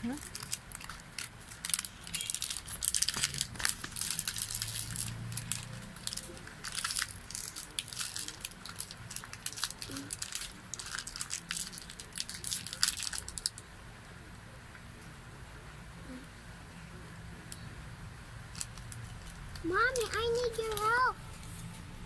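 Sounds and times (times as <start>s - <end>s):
plastic packaging crinkling: 0.0s - 13.5s, 18.6s - 21.1s.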